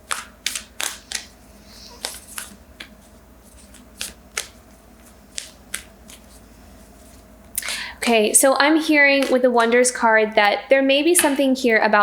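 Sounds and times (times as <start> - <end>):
cards snapping and tapping: 0.0 - 3.0, 3.6 - 6.3.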